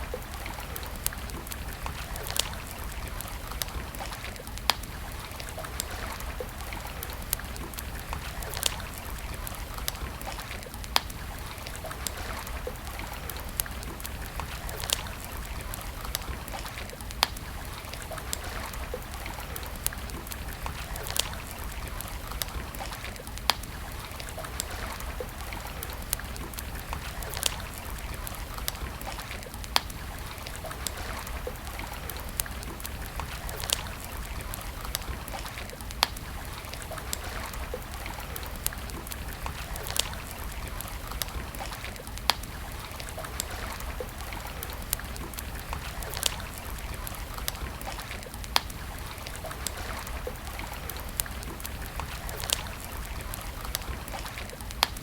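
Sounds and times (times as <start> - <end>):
campfire crackling: 0.0 - 55.0
campfire sharp pops: 0.1 - 55.0.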